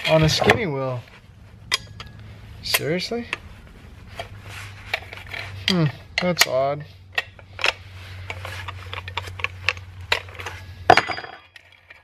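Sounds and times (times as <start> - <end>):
low steady hum: 0.0 - 12.0
metal parts clinking: 7.2 - 12.0.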